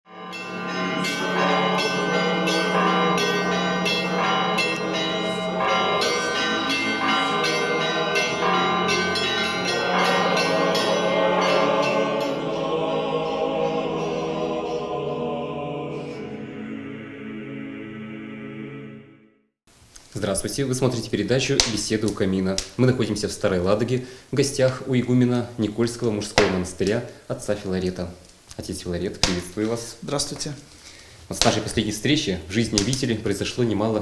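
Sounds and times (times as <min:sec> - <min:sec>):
church bells ringing: 0:00.1 - 0:15.0
steady low tone: 0:00.2 - 0:17.3.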